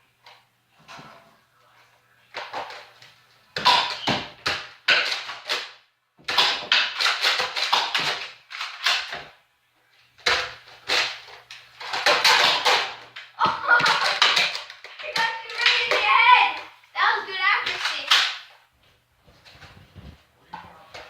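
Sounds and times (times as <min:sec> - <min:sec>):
toy blasters clacking and firing: 0:03.6 - 0:09.2, 0:10.3 - 0:16.7, 0:17.6 - 0:18.6.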